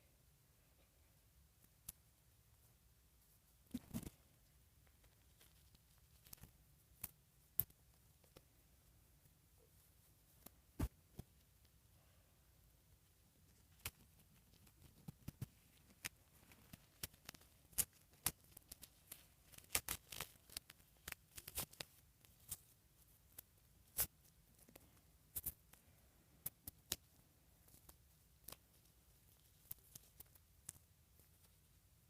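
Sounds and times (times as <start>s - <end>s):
hands handling a doll and packaging: 3.7s - 8.4s, 13.6s - 25.8s, 26.4s - 31.8s.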